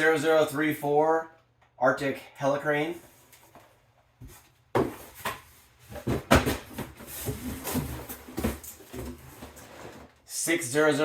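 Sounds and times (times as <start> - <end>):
cardboard boxes scraping: 4.3 - 10.2
boxes knocking: 5.9 - 9.7.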